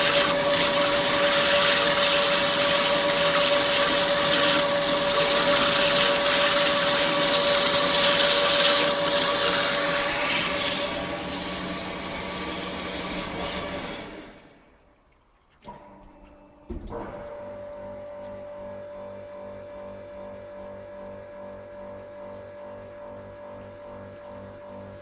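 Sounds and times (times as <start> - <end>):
band saw running with whine: 0.0 - 14.4.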